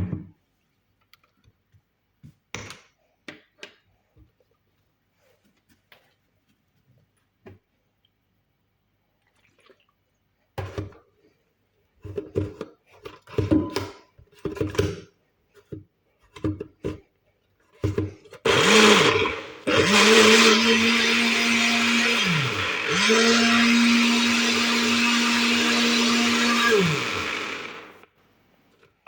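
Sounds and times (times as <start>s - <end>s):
blender running: 18.4s - 28.0s.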